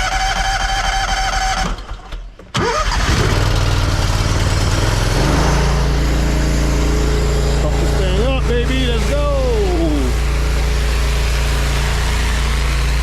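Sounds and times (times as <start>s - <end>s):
electric starter whine: 0.0s - 2.0s, 2.6s - 13.0s
engine running: 2.8s - 13.0s.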